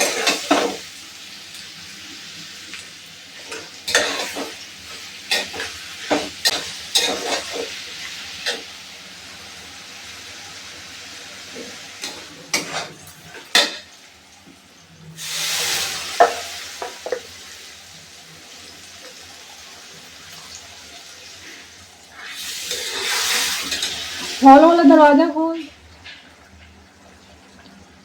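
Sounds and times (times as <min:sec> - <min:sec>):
spoon scraping a pan: 0:00.0 - 0:00.8, 0:03.4 - 0:07.8, 0:11.6 - 0:13.9, 0:15.6 - 0:17.3, 0:22.2 - 0:24.4
frying hiss: 0:00.0 - 0:28.0
loud sizzling bursts: 0:15.0 - 0:25.8.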